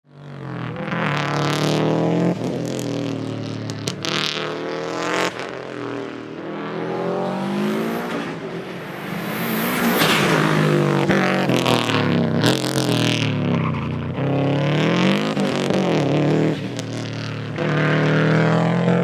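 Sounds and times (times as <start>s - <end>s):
car engine accelerating hard: 0.1s - 19.0s
gear changes: 5.3s - 13.1s.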